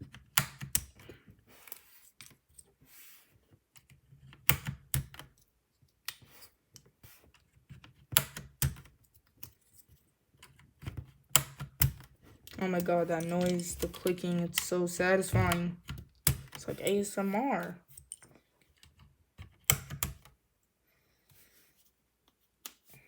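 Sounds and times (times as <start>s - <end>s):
keycaps clicking onto keyboard: 13.1s - 16.6s.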